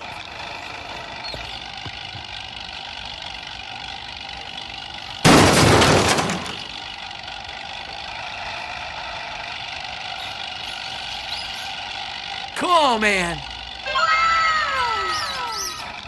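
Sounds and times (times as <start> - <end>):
loud crash: 5.2 - 6.7.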